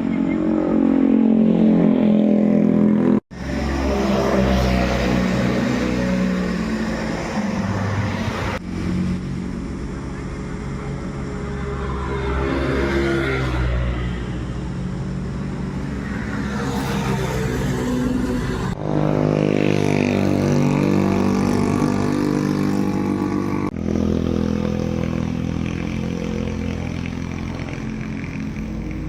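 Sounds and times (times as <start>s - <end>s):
vehicle engines passing on road: 0.0s - 29.0s.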